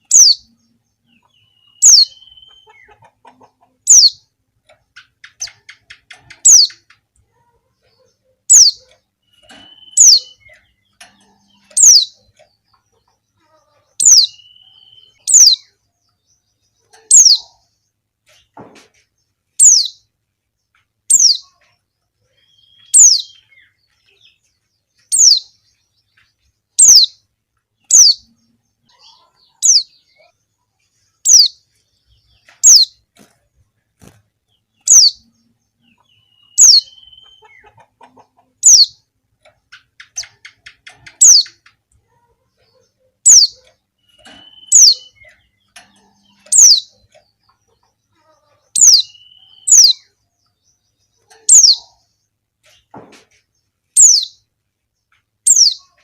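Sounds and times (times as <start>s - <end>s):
bird high downward-sliding calls: 14.0s - 15.7s, 22.4s - 23.7s, 36.0s - 37.8s, 43.3s - 45.4s, 48.7s - 50.1s.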